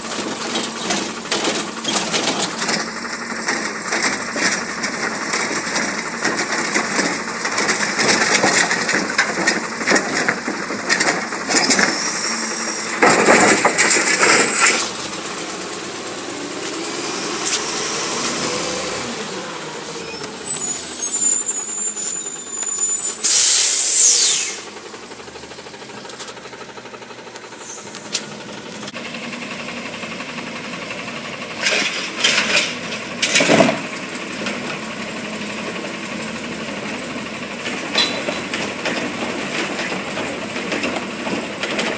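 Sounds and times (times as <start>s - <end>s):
garbage truck engine running: 0.0s - 41.9s
recyclables clattering and banging: 0.2s - 12.0s, 12.9s - 15.0s, 31.6s - 34.9s, 37.6s - 41.9s
loud rushing noise: 14.8s - 20.1s.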